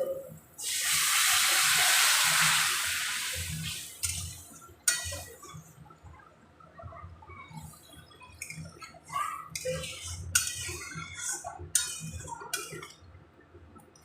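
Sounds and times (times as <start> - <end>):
water hissing in hot pan: 0.6 - 5.6.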